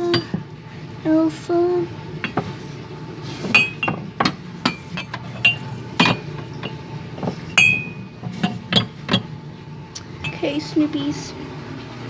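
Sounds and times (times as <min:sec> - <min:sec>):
cups clinking and knocking: 0:02.2 - 0:09.3.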